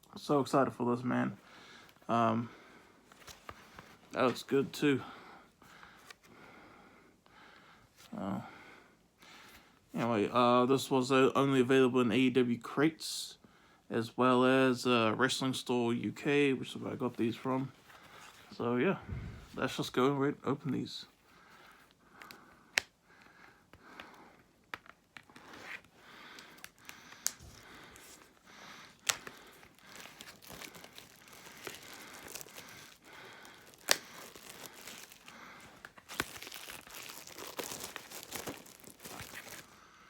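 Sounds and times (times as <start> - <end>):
plastic packaging tearing and crinkling: 28.9 - 39.8.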